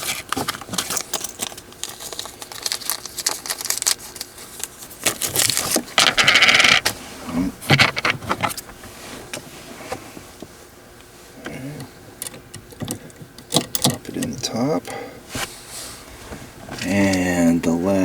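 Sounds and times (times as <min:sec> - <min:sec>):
small metal hardware clinking: 0:12.2 - 0:14.4.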